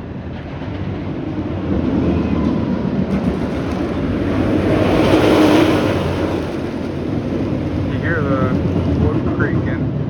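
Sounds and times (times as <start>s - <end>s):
roller coaster train passing: 3.1s - 9.7s.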